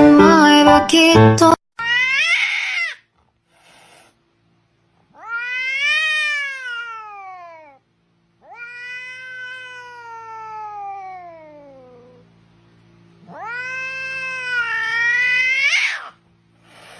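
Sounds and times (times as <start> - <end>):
cat yowling: 1.8 - 3.1, 5.1 - 7.8, 8.4 - 12.2, 13.2 - 16.2.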